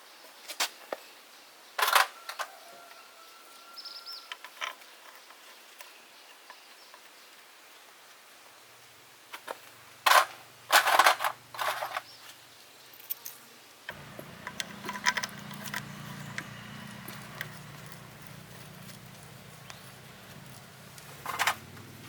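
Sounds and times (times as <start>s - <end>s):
metal tools clattering: 10.1s - 12.0s, 13.9s - 20.6s
steady low hum: 13.9s - 22.0s.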